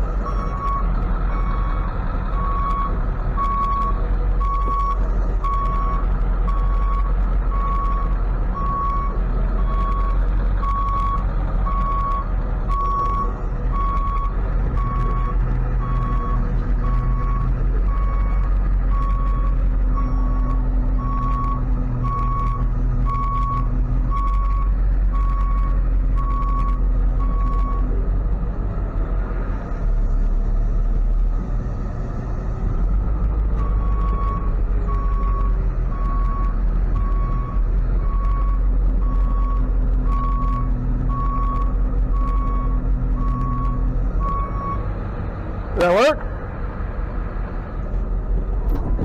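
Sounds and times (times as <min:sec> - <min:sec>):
truck engine running: 0:00.0 - 0:49.0.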